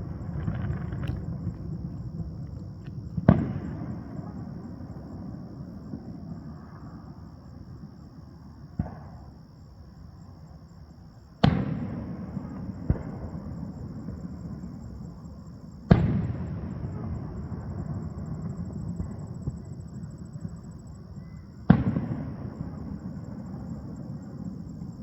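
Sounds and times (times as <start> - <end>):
firework pops: 0.0 - 3.8
firework booms with rolling echo: 0.0 - 9.4, 11.4 - 25.0.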